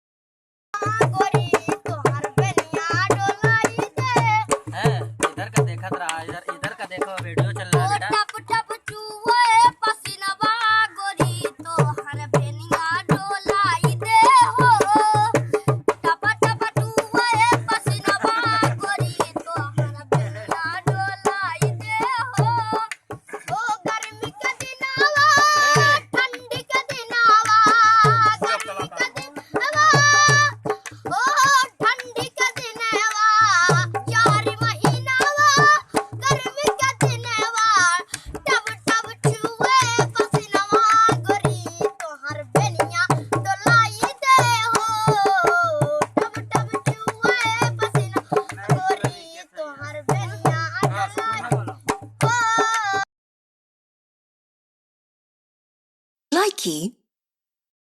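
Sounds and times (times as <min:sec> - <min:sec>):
ornamented singing voice: 0:00.8 - 0:53.0
tabla and drum beat: 0:00.8 - 0:53.1, 0:56.4 - 0:56.9
person singing: 0:28.2 - 0:30.5.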